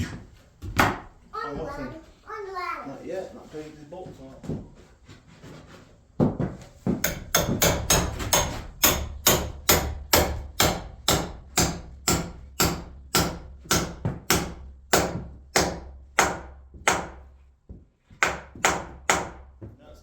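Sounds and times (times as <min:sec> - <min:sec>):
hammer striking wood: 0:00.7 - 0:01.1, 0:06.2 - 0:17.4, 0:18.2 - 0:19.7.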